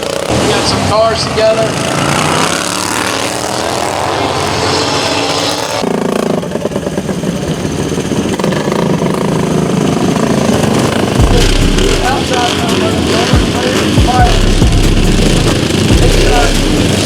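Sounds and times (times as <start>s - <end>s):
racing lawn mower engines: 0.0s - 17.0s.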